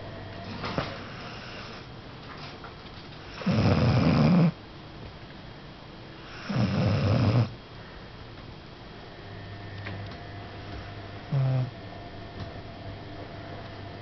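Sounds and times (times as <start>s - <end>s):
pet snoring: 0.8s - 1.9s, 3.2s - 4.6s, 6.2s - 7.6s, 11.2s - 11.8s.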